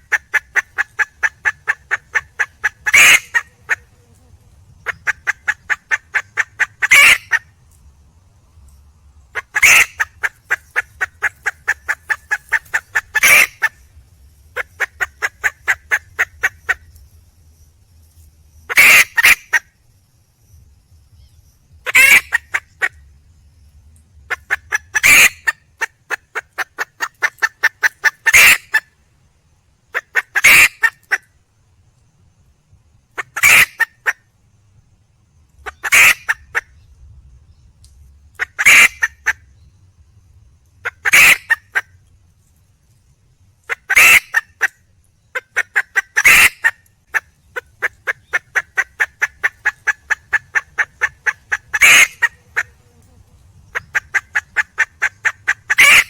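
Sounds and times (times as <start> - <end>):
hen clucking and squawking: 0.0 - 4.0, 4.8 - 7.5, 9.3 - 13.8, 14.6 - 16.8, 18.7 - 19.6, 21.8 - 23.0, 24.3 - 28.9, 29.9 - 31.2, 33.2 - 34.2, 35.6 - 36.7, 38.4 - 39.4, 40.8 - 41.9, 43.7 - 53.0, 53.7 - 56.0.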